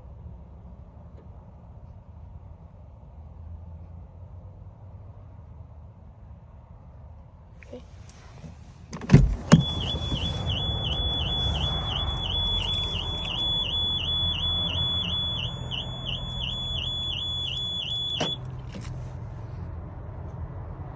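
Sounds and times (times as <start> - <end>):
car alarm pulsing tone: 9.2 - 18.4.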